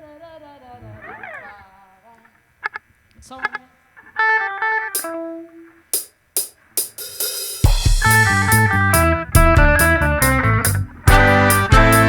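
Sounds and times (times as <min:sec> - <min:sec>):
hi-hat and cymbal strikes: 0:06.0 - 0:12.0
reggae band playing: 0:06.8 - 0:12.0
guitar notes: 0:08.0 - 0:12.0.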